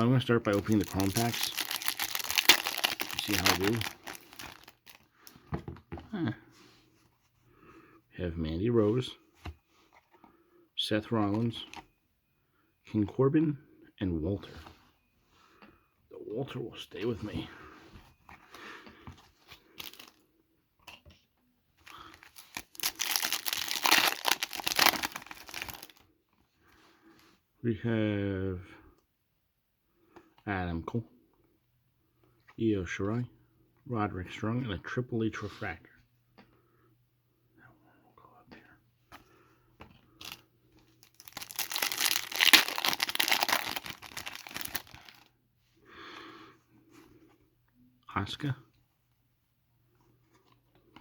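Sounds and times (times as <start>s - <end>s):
wrapper crinkling and tearing: 0.0s - 5.0s, 19.8s - 20.2s, 21.9s - 26.0s, 41.0s - 45.3s.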